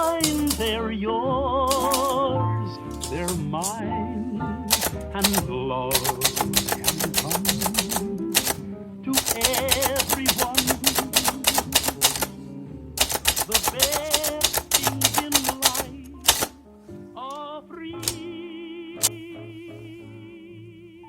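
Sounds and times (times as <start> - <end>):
typewriter keystrokes: 0.0 - 0.8, 1.7 - 2.3, 3.0 - 3.8, 4.7 - 12.3, 13.0 - 16.6, 18.0 - 18.2
song with singing: 0.0 - 21.0.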